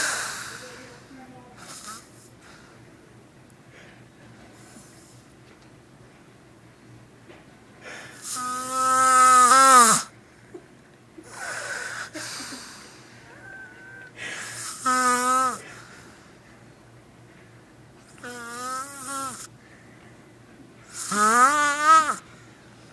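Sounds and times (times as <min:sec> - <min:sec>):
man snoring: 0:08.1 - 0:10.1, 0:14.4 - 0:15.8, 0:18.2 - 0:19.5, 0:20.9 - 0:22.2
breathy exhale: 0:14.2 - 0:14.8.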